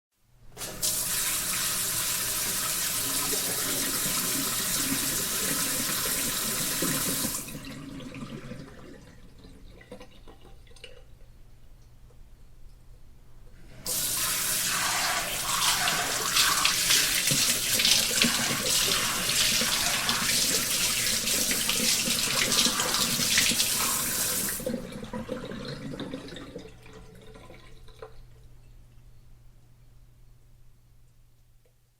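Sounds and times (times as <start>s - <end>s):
shower water splashing: 13.8s - 26.1s.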